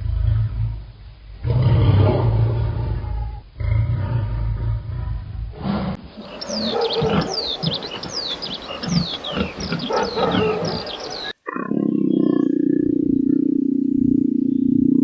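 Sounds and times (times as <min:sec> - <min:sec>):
birds chirping: 0:06.2 - 0:11.4
low-pitched animal call: 0:06.2 - 0:11.4.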